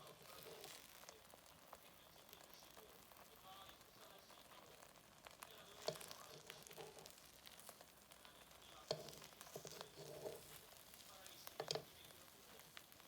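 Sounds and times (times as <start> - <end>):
food frying in a pan: 0.0 - 13.0.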